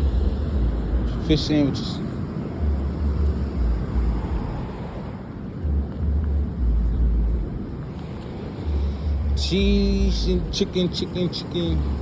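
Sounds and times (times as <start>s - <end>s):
wind buffeting microphone: 0.0s - 10.9s.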